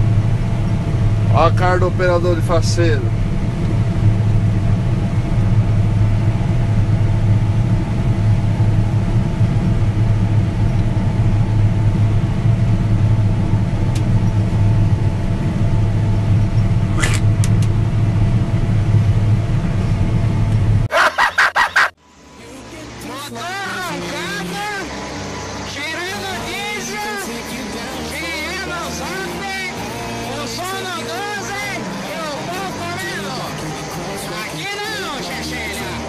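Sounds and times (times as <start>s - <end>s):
combine harvester engine humming: 0.0s - 36.0s.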